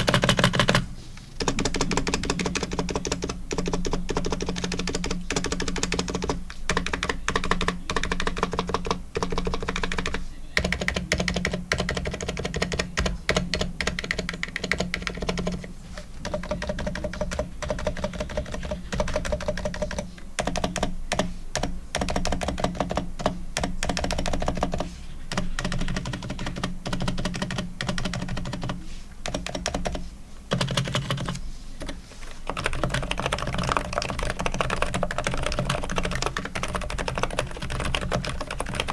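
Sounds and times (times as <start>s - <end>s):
fast typing on keyboard: 0.0s - 38.9s.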